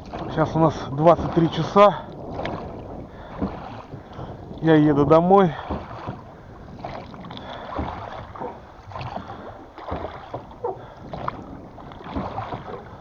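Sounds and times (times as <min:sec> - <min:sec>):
oars splashing in water: 0:00.0 - 0:13.0
short irregular knocks: 0:05.5 - 0:13.0.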